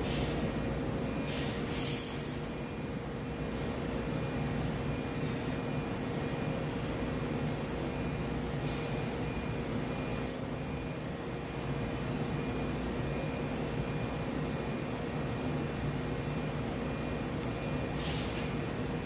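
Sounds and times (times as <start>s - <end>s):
electrical hum: 0.0s - 19.0s
welding arc hissing: 1.7s - 2.8s.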